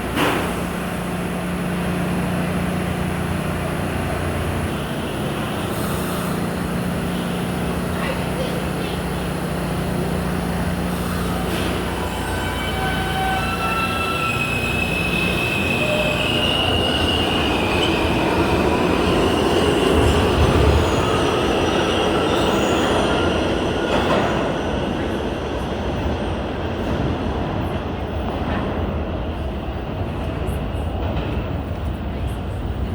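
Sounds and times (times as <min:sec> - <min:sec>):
train wheels rumbling on rail: 0:00.0 - 0:32.9
high wheel squeal: 0:10.8 - 0:24.1.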